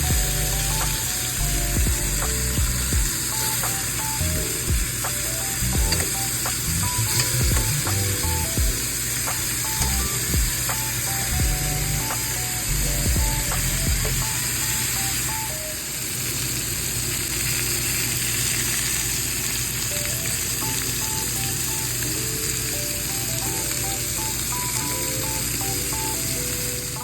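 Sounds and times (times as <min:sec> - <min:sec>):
background music with bass line: 0:00.0 - 0:08.8, 0:09.8 - 0:14.4
food sizzling in a frying pan: 0:00.0 - 0:27.0.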